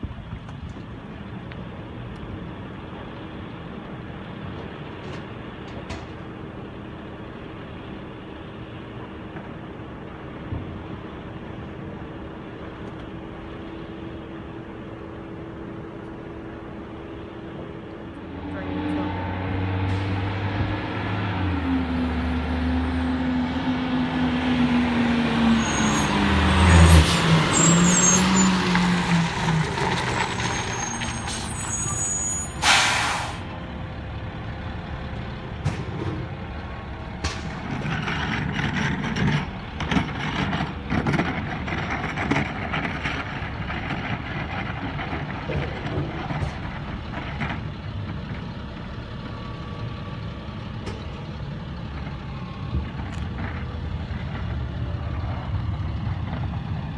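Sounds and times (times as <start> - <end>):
diesel engine running: 0.0 - 56.9
knocks and clanks: 4.5 - 6.5, 35.6 - 48.5
air brakes hissing: 25.2 - 33.6.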